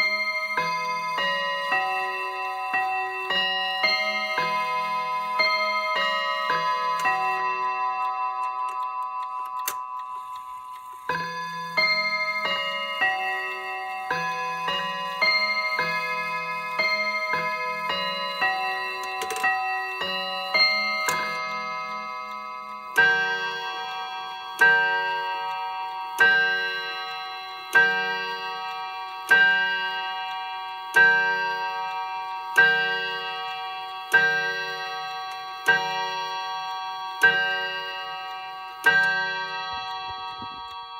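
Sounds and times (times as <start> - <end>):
clock chime tune: 0.0 - 40.9
clock striking the hour: 0.0 - 40.9.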